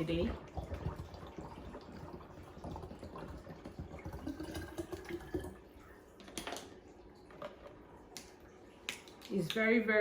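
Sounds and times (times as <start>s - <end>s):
water pouring into bottle: 0.1s - 6.0s.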